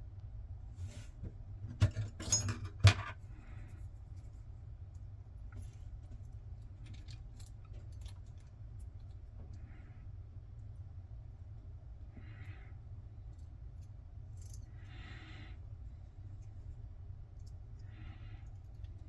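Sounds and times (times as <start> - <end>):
metal lock parts clattering: 1.8 - 3.2.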